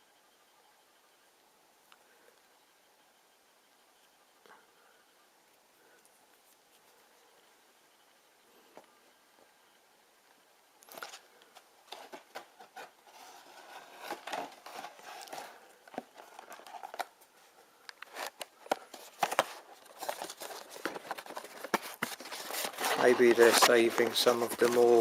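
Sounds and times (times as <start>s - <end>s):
packaging crinkling and scraping: 10.9s - 17.2s, 17.9s - 25.0s.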